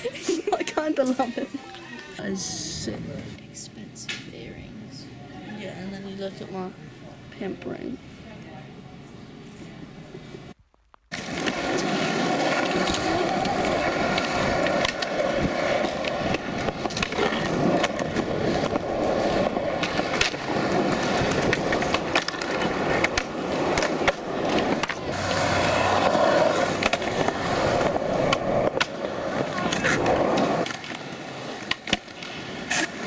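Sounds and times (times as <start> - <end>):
skateboard wheels rolling on pavement: 7.8 - 33.0.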